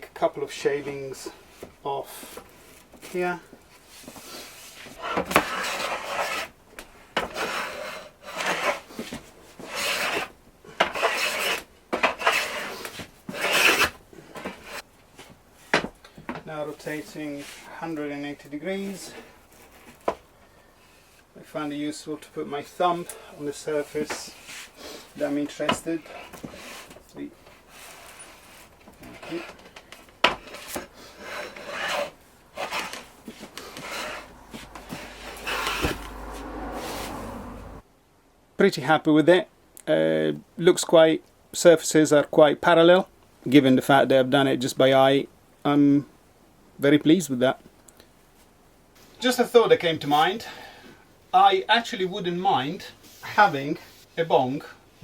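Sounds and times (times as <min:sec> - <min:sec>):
hand plane shaving wood: 0:04.9 - 0:06.6, 0:07.2 - 0:14.8, 0:27.6 - 0:29.6, 0:30.2 - 0:37.5.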